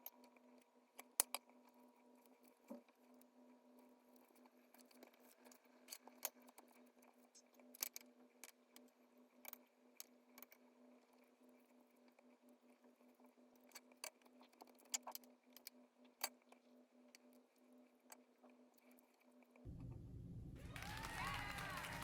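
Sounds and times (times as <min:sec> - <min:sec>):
small clicks and taps: 0:00.0 - 0:03.3
steady low hum: 0:19.7 - 0:22.0.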